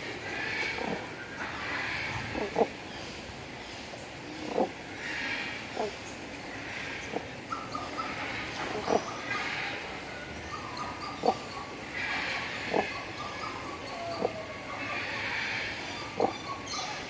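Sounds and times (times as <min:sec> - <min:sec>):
cranes calling: 0:06.6 - 0:17.0.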